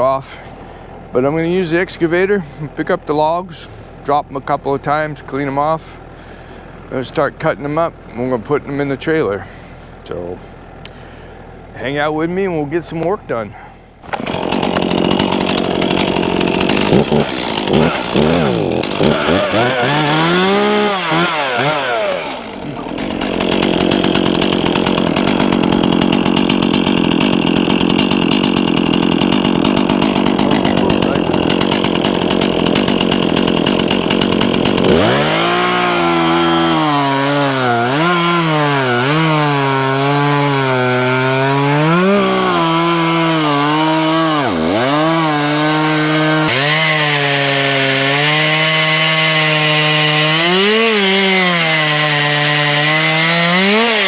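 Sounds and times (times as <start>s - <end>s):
chainsaw cutting through log: 0.0s - 54.0s
chainsaw engine revving: 13.6s - 54.0s.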